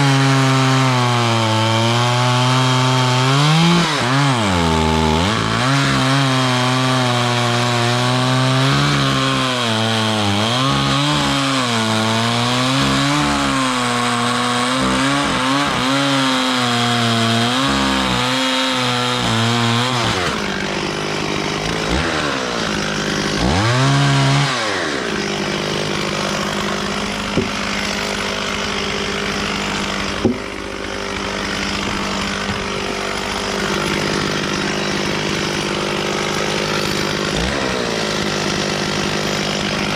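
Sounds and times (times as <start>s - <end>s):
chainsaw cutting wood: 0.0s - 39.9s
sharp knocks: 27.3s - 27.9s, 30.1s - 30.6s.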